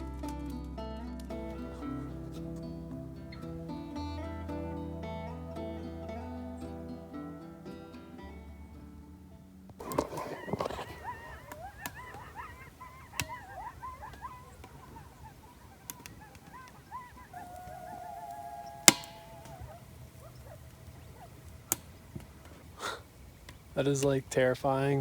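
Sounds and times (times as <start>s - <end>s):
coyote howling: 1.4s - 7.4s, 9.8s - 23.8s, 24.4s - 25.0s
coyotes yipping: 1.4s - 8.9s, 9.7s - 25.0s
sharp cracks: 9.8s - 24.2s.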